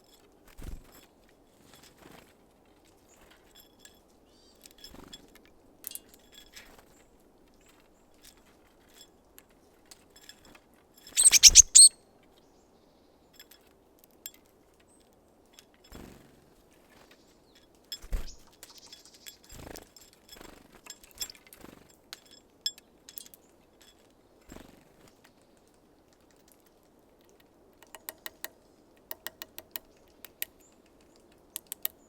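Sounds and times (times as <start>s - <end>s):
birds tapping and scuffing: 11.2s - 11.9s.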